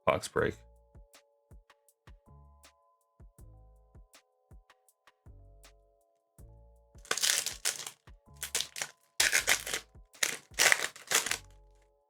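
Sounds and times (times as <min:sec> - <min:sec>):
soft background music: 0:00.0 - 0:12.0
foil wrapper crinkling: 0:07.1 - 0:11.4.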